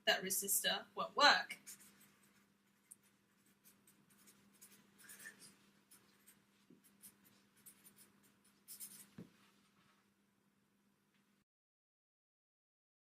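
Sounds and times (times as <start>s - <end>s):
faint steady hum: 0.0s - 11.4s
pen scratching on paper: 1.6s - 9.3s.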